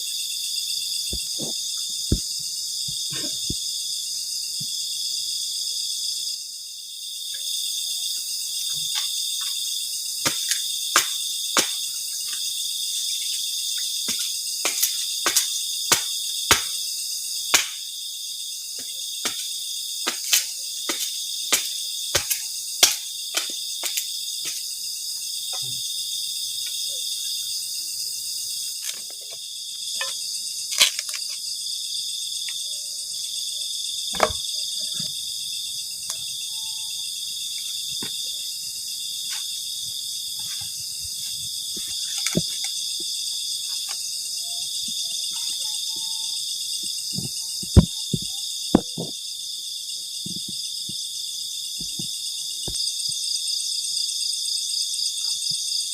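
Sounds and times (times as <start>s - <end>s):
crickets and insects chorus: 0.0s - 55.9s
sharp snaps and knocks: 10.2s - 12.5s, 13.8s - 16.8s, 17.5s - 17.9s, 18.8s - 24.7s, 30.0s - 31.4s, 41.8s - 43.1s, 47.2s - 49.2s.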